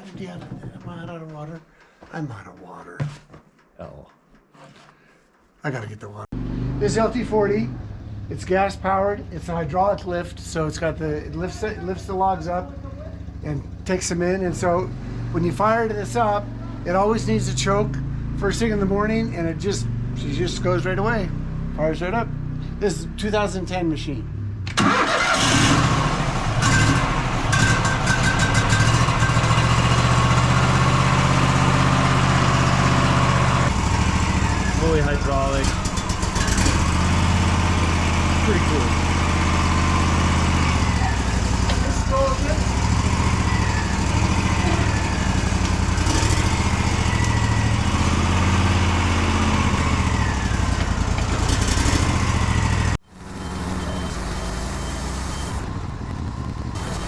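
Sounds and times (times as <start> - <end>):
gas engine running: 24.7 - 57.0
hydraulic whine: 42.6 - 57.0.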